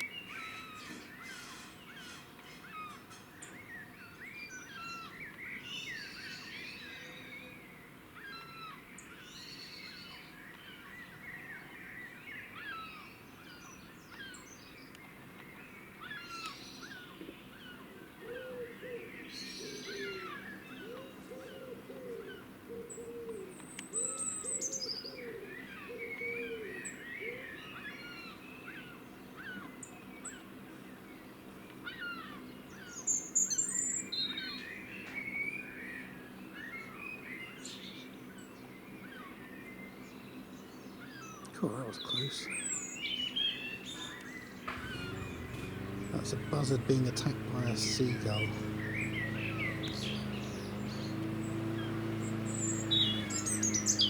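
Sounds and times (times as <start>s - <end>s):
birds chirping: 0.0s - 54.0s
pigeon cooing: 18.2s - 24.2s
high bird trills: 41.0s - 54.0s.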